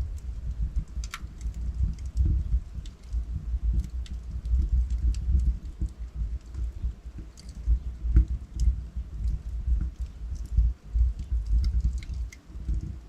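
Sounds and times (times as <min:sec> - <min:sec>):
logs crackling and popping: 0:00.0 - 0:13.0
low rumble of flames: 0:00.0 - 0:13.0.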